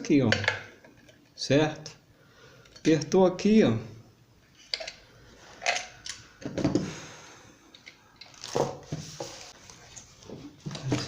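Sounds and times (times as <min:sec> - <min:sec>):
metal parts and tools clicking: 0:04.6 - 0:05.0.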